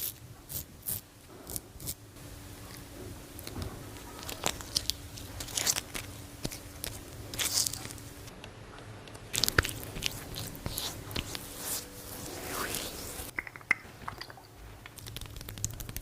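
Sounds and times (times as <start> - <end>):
brittle crunching and crackling: 3.4 - 8.1, 9.3 - 11.5
sharp snaps: 13.3 - 16.0.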